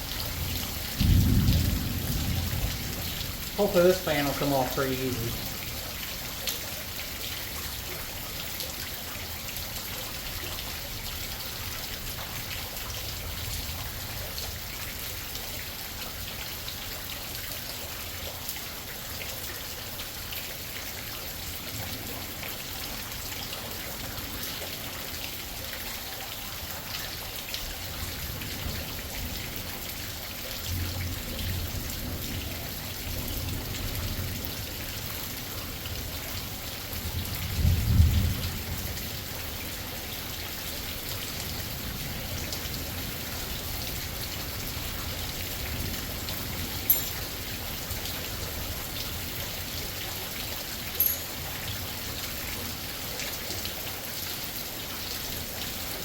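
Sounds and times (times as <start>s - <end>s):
low rumble of thunder: 0.0s - 3.6s, 28.0s - 39.4s
heavy rain falling: 0.0s - 56.0s.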